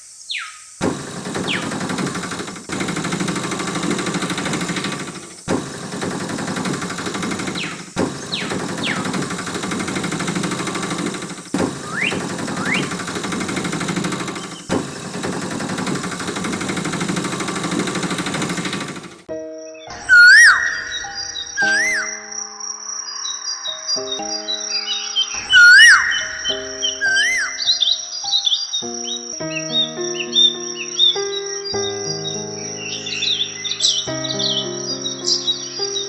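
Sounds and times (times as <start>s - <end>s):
sliding whistle-like chirps: 0.3s - 19.0s, 20.0s - 22.3s, 24.8s - 28.0s
engine idling: 0.8s - 19.3s.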